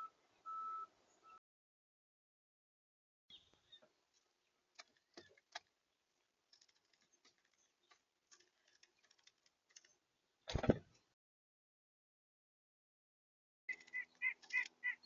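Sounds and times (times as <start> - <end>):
bird pecking taps and clicks: 13.7 - 14.8
high bird chirp: 13.7 - 15.0.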